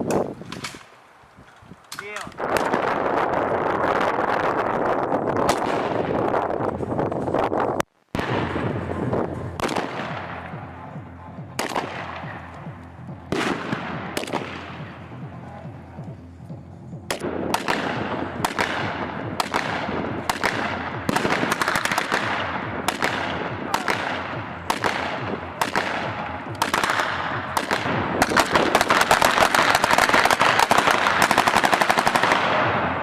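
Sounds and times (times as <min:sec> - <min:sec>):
rapid automatic gunfire: 0:11.6 - 0:12.4, 0:17.1 - 0:33.0
single gunshots with echo: 0:11.6 - 0:12.4, 0:13.3 - 0:14.8, 0:17.1 - 0:33.0.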